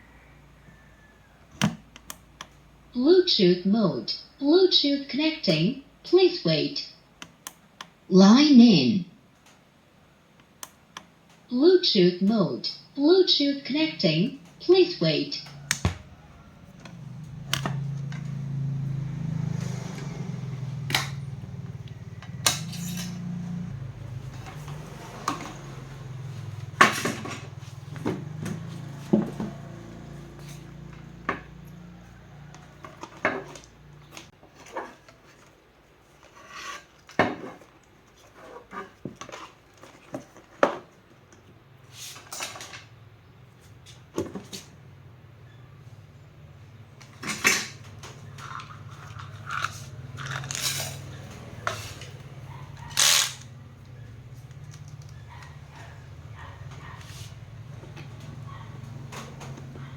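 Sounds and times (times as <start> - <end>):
metal tools clinking: 22.5 - 23.3, 48.4 - 52.1.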